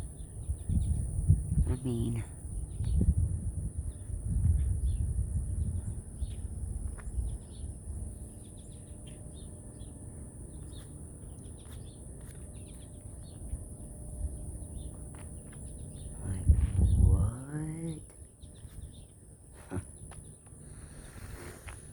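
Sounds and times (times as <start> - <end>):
low outdoor rumble: 0.0 - 21.9
small birds chirping: 0.0 - 21.9.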